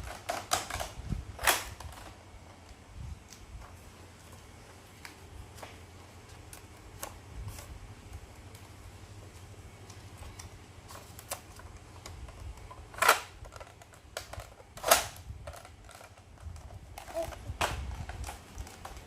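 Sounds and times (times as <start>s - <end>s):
sharp plastic snaps: 0.0s - 3.7s, 9.8s - 19.0s.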